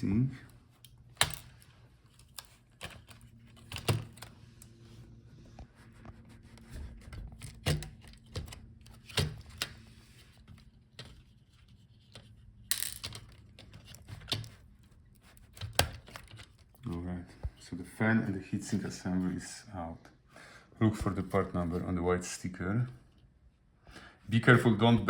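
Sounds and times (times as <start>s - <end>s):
clicks and knocks of parts handled: 0.6s - 4.8s, 7.0s - 16.9s.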